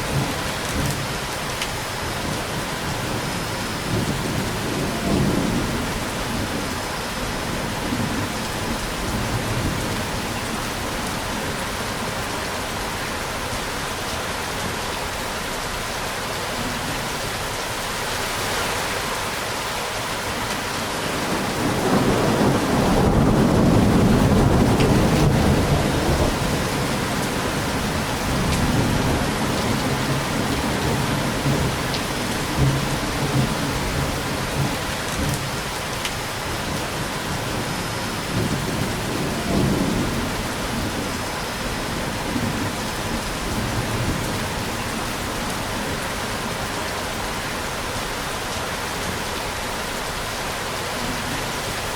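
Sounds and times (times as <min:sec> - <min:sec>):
steady rain falling: 0:00.0 - 0:51.9
low rumble of thunder: 0:02.1 - 0:11.4, 0:21.1 - 0:35.6, 0:36.5 - 0:46.1.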